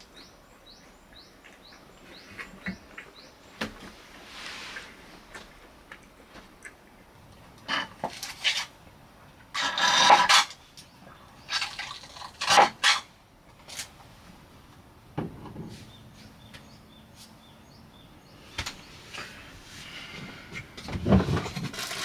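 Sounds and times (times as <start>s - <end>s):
camp gear rustling: 18.7s - 22.0s.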